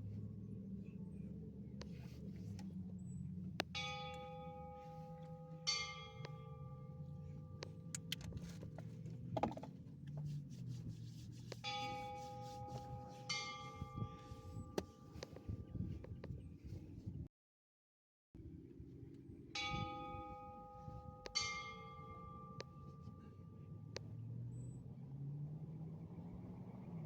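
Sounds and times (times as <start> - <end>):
steady low rumble: 0.0 - 17.3
church bell ringing: 3.8 - 7.9, 11.7 - 15.1, 19.6 - 23.9.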